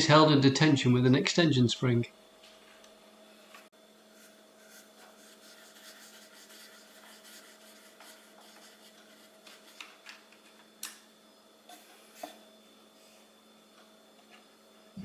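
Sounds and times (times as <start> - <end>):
faint rubbing and scratching: 4.1 - 9.8.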